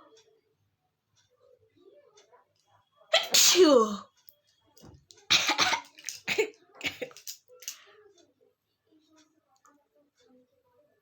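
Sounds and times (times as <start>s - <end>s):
person sneezing loudly: 3.2s - 4.0s.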